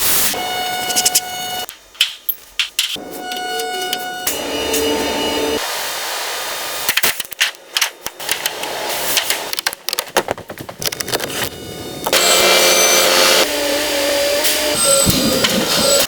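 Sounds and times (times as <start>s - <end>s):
machine noise with whine: 0.0s - 2.0s, 2.7s - 9.7s, 10.3s - 16.0s.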